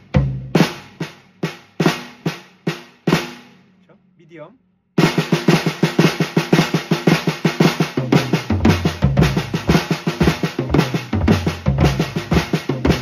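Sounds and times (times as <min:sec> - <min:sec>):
snare drum strokes: 0:05.0 - 0:13.0
deep drum hits: 0:08.0 - 0:13.0.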